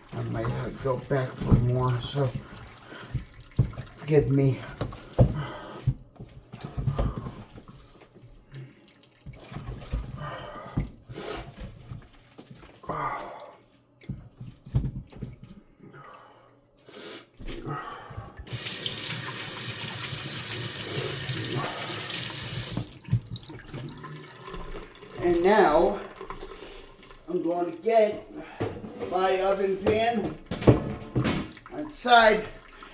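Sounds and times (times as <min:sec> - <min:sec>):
kitchen tap running: 0:18.4 - 0:28.6, 0:29.4 - 0:32.9
handling knocks and rustles: 0:28.5 - 0:31.6.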